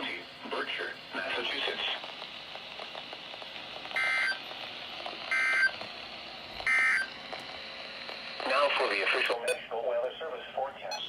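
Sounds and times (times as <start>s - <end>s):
electronic data bleeps: 6.7s - 7.1s.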